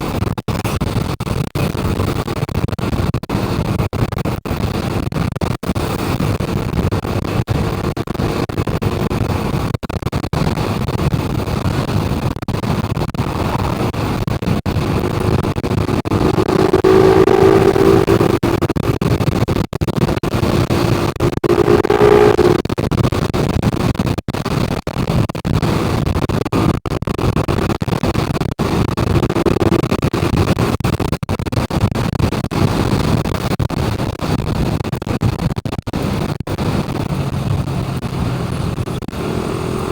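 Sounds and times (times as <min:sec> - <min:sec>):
motor vehicle rumble: 0:13.2 - 0:19.3, 0:20.4 - 0:22.7
humming tone: 0:15.2 - 0:18.8, 0:20.7 - 0:22.7, 0:29.2 - 0:29.9.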